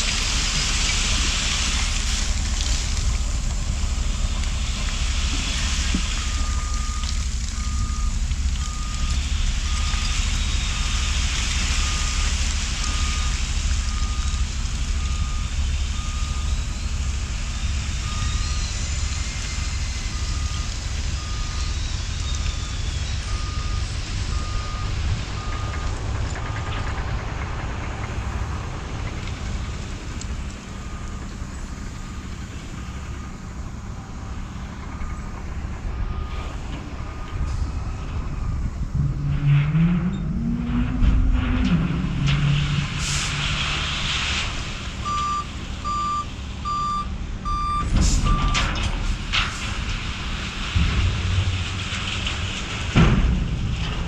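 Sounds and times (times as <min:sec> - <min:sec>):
diesel truck engine running: 0:00.0 - 0:54.0
reverse alarm beeping: 0:45.0 - 0:48.6.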